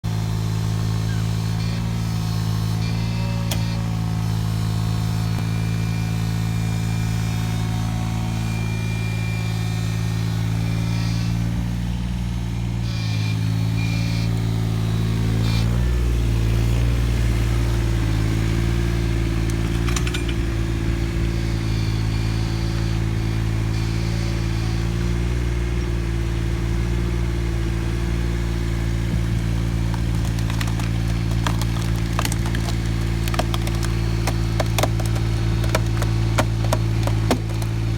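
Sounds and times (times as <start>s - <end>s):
excavator diesel engine: 0.0s - 37.9s
sharp cracks: 29.5s - 37.9s.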